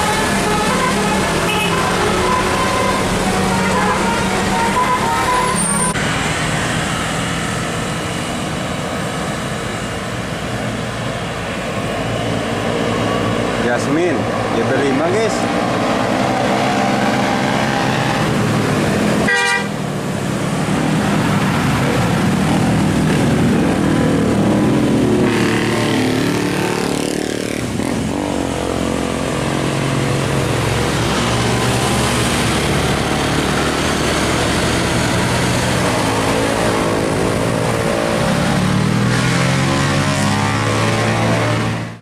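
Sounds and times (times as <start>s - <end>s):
multi-tone musical bus horns: 0.0s - 6.0s, 16.5s - 18.6s, 19.2s - 19.8s, 39.1s - 42.0s
bus engines: 0.0s - 42.0s
passing traffic: 0.0s - 42.0s.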